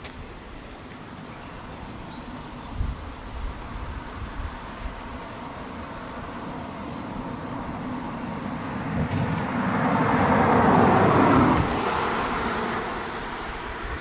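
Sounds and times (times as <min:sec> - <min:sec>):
car passing by: 0:03.4 - 0:14.0.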